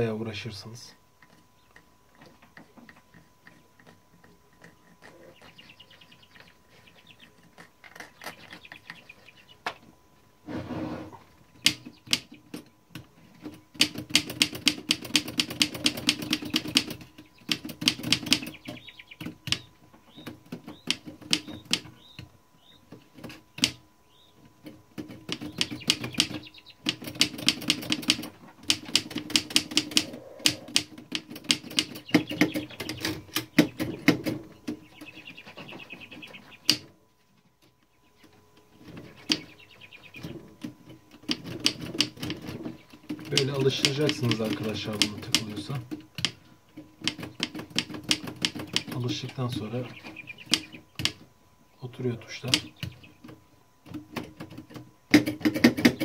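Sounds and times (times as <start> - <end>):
typewriter keys clacking: 43.2 - 45.6.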